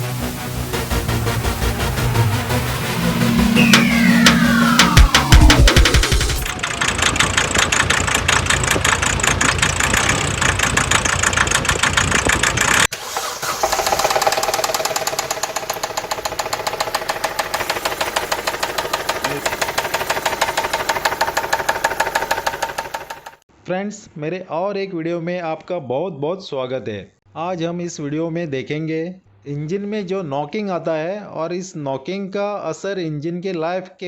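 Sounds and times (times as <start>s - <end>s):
steady tone: 0.6s - 6.6s
diesel engine knocking: 2.6s - 23.4s.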